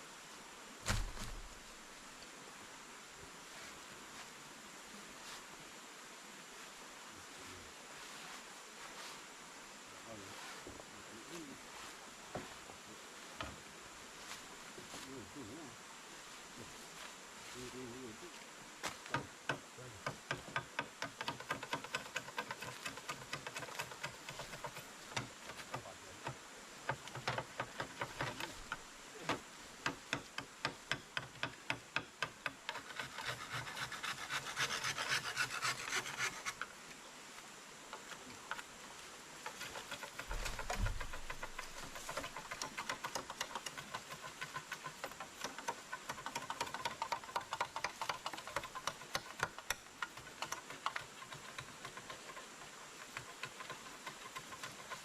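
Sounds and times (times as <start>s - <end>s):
scraping strokes on wood: 18.8s - 36.8s, 39.4s - 55.0s.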